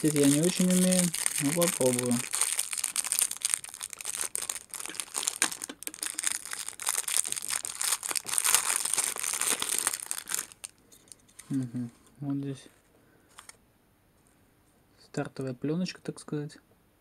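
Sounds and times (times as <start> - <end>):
plastic packaging crinkling: 0.0 - 11.6.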